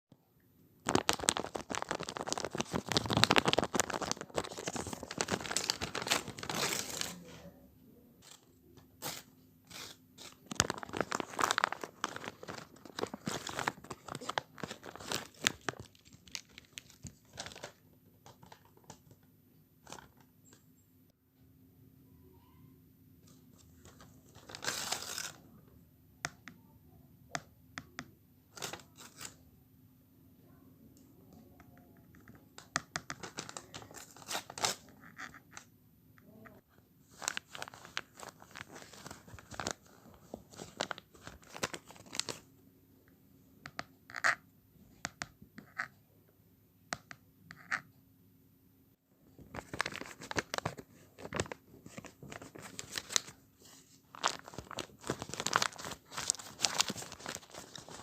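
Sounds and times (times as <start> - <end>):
packaging torn and crinkled: 0.8 - 7.2, 9.0 - 17.8, 24.4 - 25.4, 33.2 - 34.8, 37.1 - 39.8, 40.5 - 42.4, 49.5 - 53.4, 54.1 - 58.0.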